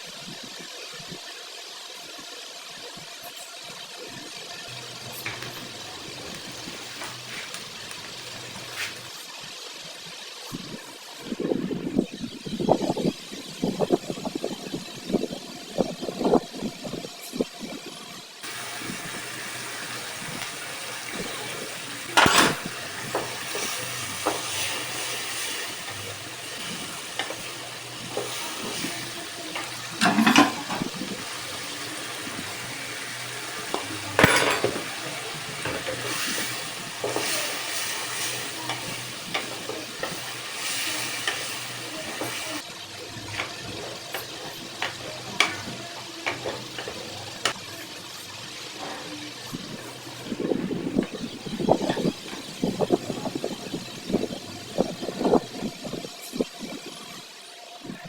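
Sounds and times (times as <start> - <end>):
oil sizzling in a pan: 0.0 - 58.0
spoon scraping a pan: 20.9 - 42.6, 43.3 - 47.6
stirring clicks: 43.3 - 47.6.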